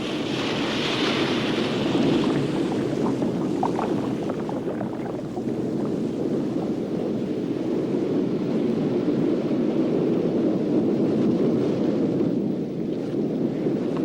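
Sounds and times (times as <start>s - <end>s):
heavy surf: 0.0s - 10.4s
wind: 0.0s - 14.0s.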